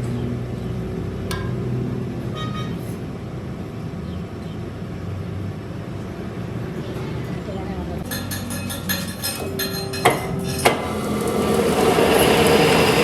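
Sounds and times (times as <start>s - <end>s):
lathe motor humming: 10.7s - 13.0s.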